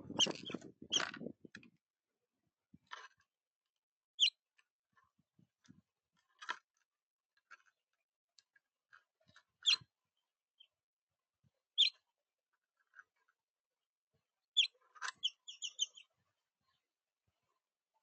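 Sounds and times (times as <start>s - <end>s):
bird chirping: 11.8s - 12.0s, 14.6s - 16.1s.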